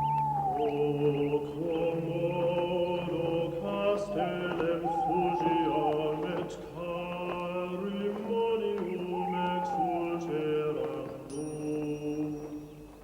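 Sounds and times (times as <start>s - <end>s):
wavering gliding tone: 0.0s - 1.7s
eerie droning music: 0.0s - 11.4s.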